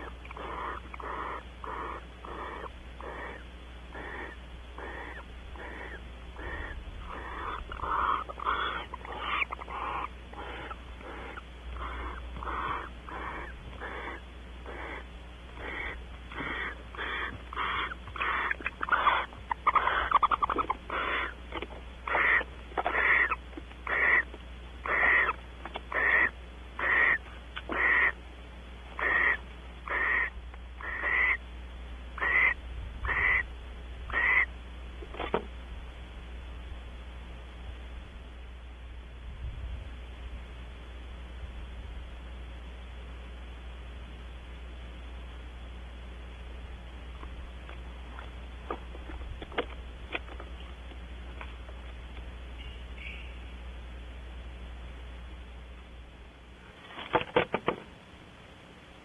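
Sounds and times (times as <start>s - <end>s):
owls giving wheezy hissing calls: 0.0s - 28.2s, 29.0s - 31.4s, 32.2s - 33.5s, 34.1s - 34.5s.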